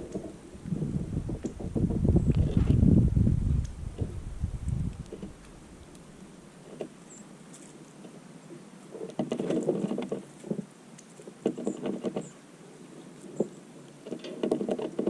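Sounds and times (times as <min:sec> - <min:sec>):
wing flutters: 0:09.2 - 0:12.4.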